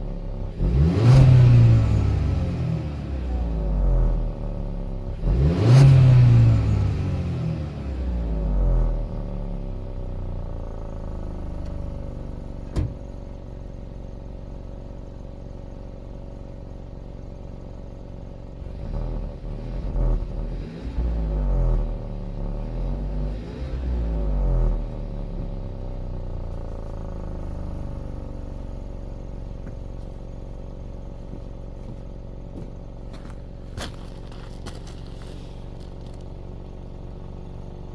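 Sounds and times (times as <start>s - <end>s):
car engine idling and revving: 0.0s - 37.9s.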